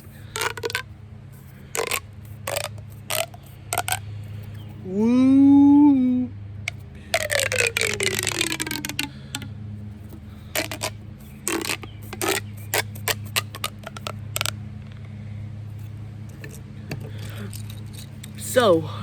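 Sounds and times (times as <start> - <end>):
plastic pop tube ratcheting: 0.0 - 4.7, 6.7 - 14.6, 15.8 - 18.4.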